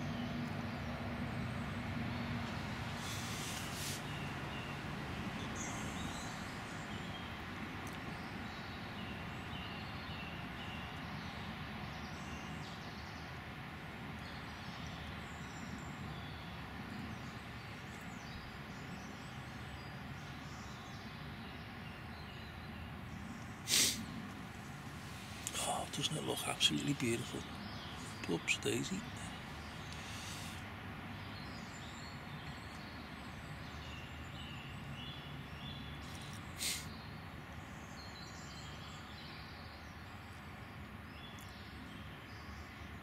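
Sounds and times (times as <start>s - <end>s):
faint bird chirps: 5.4s - 13.2s, 25.1s - 30.6s.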